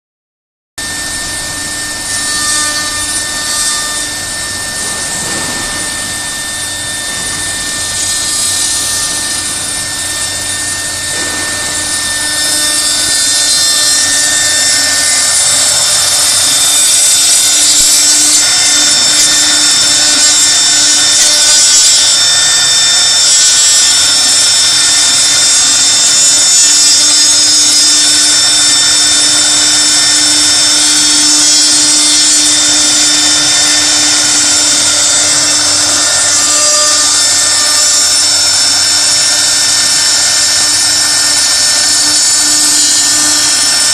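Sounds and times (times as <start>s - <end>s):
router spindle whine: 0.8s - 43.9s
bit carving wood: 26.4s - 43.9s.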